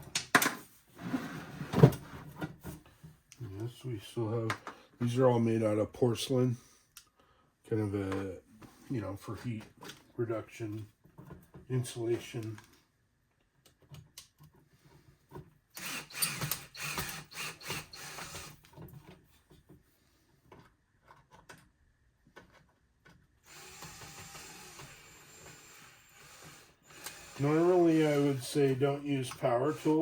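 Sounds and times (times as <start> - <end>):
power tool running: 15.8 - 18.6, 23.5 - 28.8, 29.4 - 30.0.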